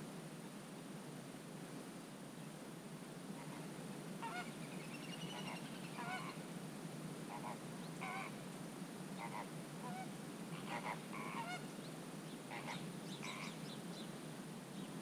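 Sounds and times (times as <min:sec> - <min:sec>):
steady low hiss: 0:00.0 - 0:15.0
waterbirds calling: 0:12.5 - 0:13.7.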